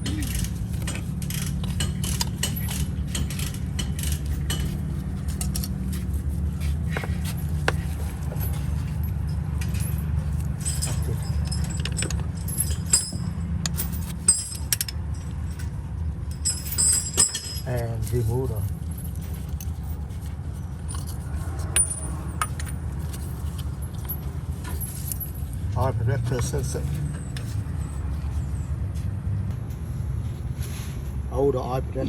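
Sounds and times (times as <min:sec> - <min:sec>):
metal jingling clinks: 0:06.9 - 0:28.7.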